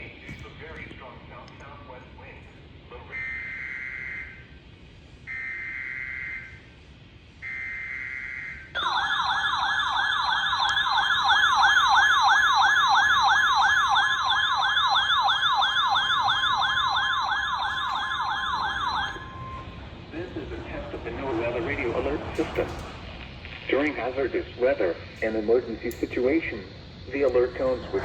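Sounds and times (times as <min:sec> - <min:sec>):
warbling alert siren: 0:03.1 - 0:04.5, 0:05.3 - 0:06.7, 0:07.4 - 0:19.8.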